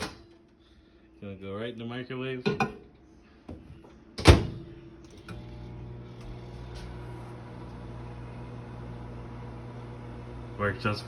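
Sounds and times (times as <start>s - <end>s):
microwave door shutting: 4.2s - 5.4s
microwave humming: 4.2s - 11.0s.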